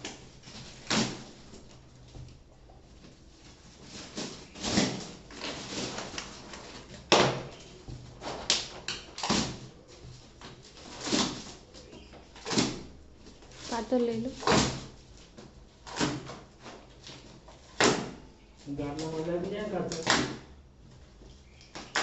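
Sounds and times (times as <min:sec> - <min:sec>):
plastic packaging rustling: 0:02.8 - 0:17.8.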